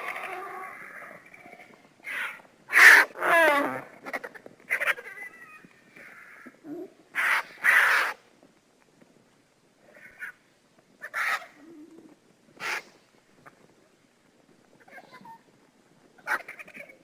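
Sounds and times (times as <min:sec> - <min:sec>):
creature cries: 0:02.0 - 0:08.1.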